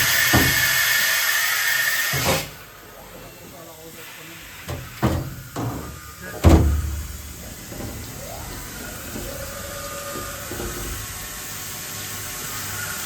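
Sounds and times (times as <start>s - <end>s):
steady mechanical hum: 0.0s - 13.0s
clunks: 4.6s - 11.1s.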